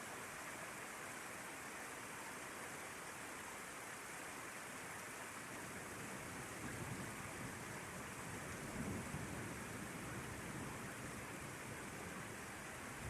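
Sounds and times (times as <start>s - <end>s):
steady rain hiss: 0.0s - 13.0s.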